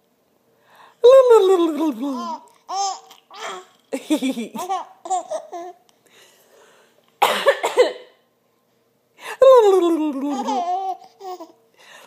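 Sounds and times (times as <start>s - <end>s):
baby laughing: 2.1s - 5.8s, 10.1s - 11.6s
harsh cough-like noise: 7.2s - 8.2s.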